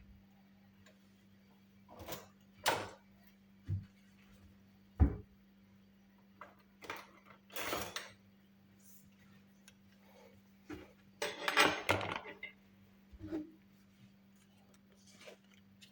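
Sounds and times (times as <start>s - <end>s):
faint steady hum: 0.0s - 15.9s
kitchen items knocking and scraping: 6.4s - 8.2s, 10.7s - 12.6s
rustling scrape: 13.2s - 15.9s.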